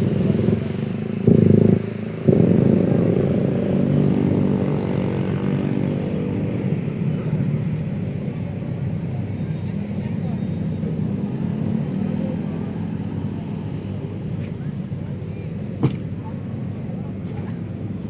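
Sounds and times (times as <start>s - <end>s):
vehicle engine passing: 10.2s - 15.0s.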